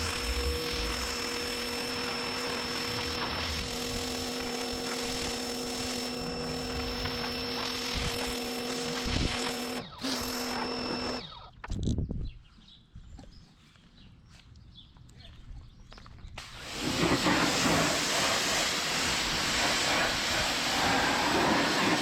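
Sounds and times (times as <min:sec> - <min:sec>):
spray hissing: 0:00.0 - 0:09.6, 0:16.4 - 0:22.0
pressure washer motor humming: 0:00.0 - 0:11.3, 0:16.4 - 0:22.0.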